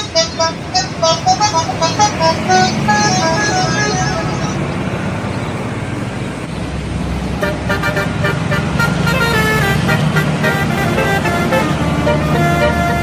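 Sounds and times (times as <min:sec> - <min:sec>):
musical bus horn tune: 0:00.0 - 0:04.7, 0:07.4 - 0:13.0
bus engine and road noise: 0:00.0 - 0:13.0.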